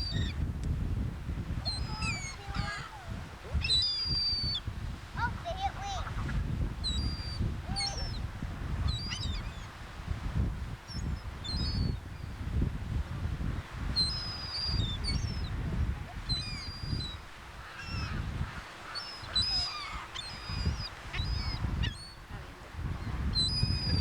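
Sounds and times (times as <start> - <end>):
seagulls calling: 1.6 - 4.6, 5.4 - 8.3, 8.9 - 9.7, 14.0 - 15.6, 16.2 - 22.3.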